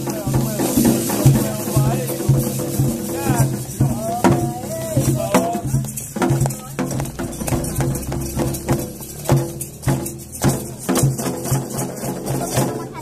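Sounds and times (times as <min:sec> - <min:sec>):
hand drums beating: 0:00.0 - 0:13.0.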